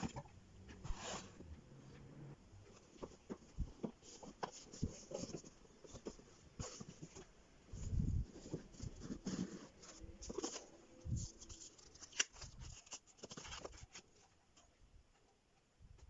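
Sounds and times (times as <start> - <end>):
packaging rustling and crinkling: 2.8 - 14.1.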